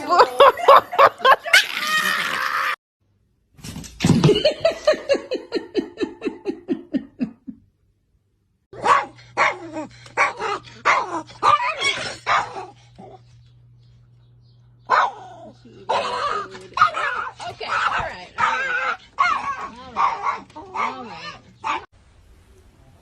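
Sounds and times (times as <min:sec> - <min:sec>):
steady low hum: 0:05.0 - 0:23.0
dog barking and yelping: 0:08.8 - 0:13.2, 0:14.9 - 0:21.9.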